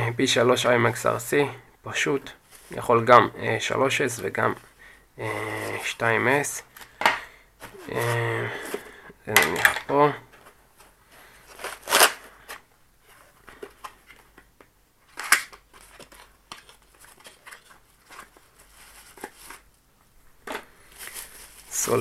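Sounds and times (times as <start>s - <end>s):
packaging rustling: 7.6s - 14.5s, 15.1s - 19.7s, 20.5s - 22.0s.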